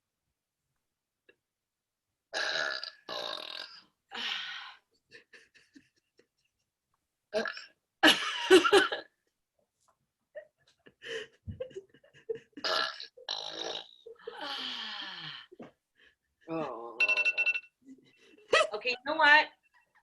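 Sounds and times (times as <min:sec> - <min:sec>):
woman burping: 0:02.3 - 0:03.8, 0:07.3 - 0:07.8, 0:12.6 - 0:15.1, 0:16.5 - 0:17.2.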